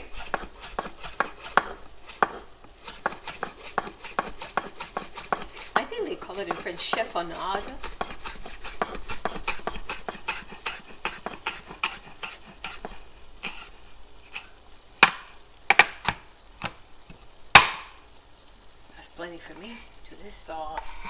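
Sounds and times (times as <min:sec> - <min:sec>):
knife slicing on cutting board: 0:00.0 - 0:14.5
knocks on cutting board: 0:17.6 - 0:17.9.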